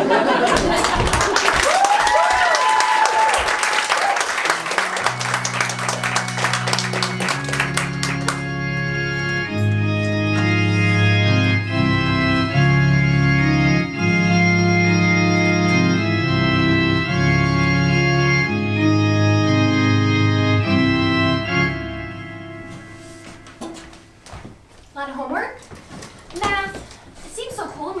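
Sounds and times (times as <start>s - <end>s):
instrumental music of held chords: 4.5s - 24.2s.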